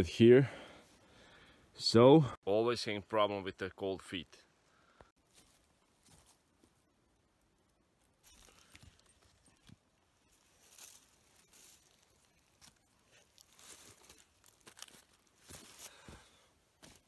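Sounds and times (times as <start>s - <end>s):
dry branches crackling: 8.0s - 17.0s.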